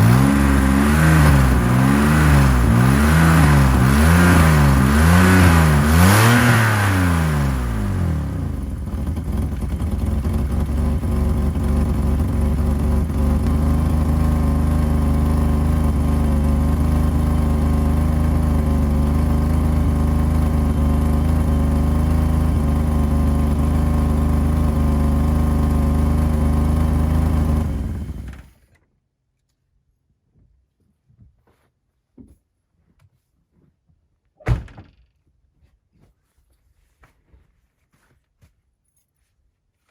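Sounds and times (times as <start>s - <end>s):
car engine revving and idling: 0.0s - 28.5s.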